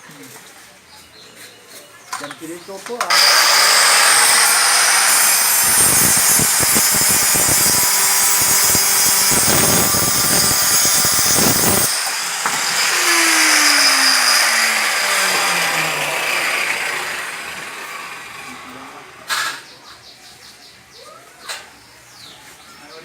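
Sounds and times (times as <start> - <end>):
power tool running loudly: 3.1 - 19.2.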